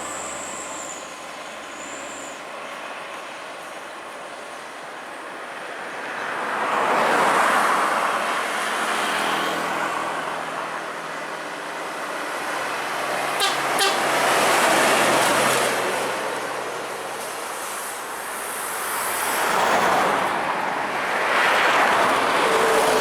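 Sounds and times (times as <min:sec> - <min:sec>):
heavy vehicles passing: 0:00.0 - 0:02.4, 0:12.7 - 0:23.0
vehicle horn: 0:13.4 - 0:14.5.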